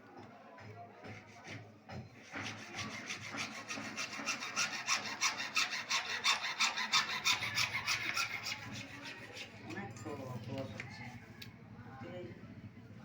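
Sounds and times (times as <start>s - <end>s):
hand tool scraping pipe: 2.2s - 9.9s.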